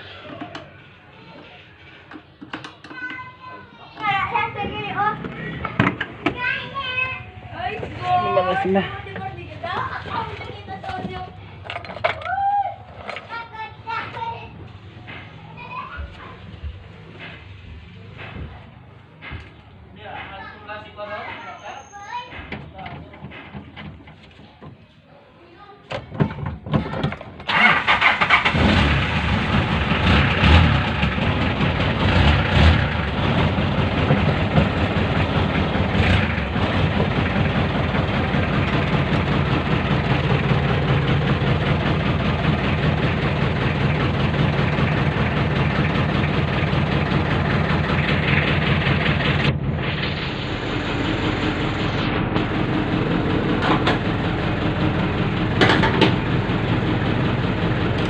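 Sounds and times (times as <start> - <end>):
car engine idling: 4.0 - 19.7, 27.5 - 58.0.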